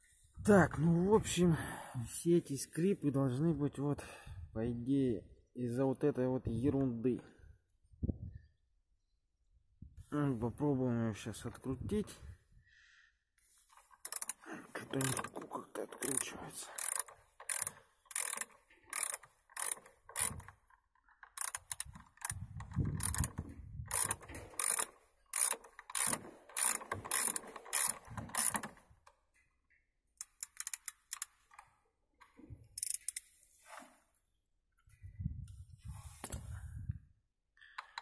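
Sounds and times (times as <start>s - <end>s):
ratchet wrench clicking: 13.8s - 15.3s, 16.0s - 20.6s, 21.2s - 28.8s, 30.2s - 31.6s, 32.8s - 33.3s.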